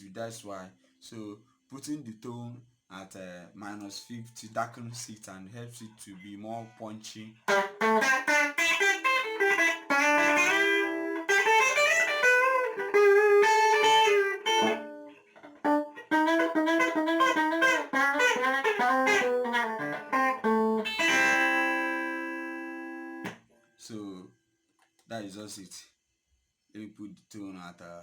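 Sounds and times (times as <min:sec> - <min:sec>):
electric guitar lead phrases: 0:07.5 - 0:23.3.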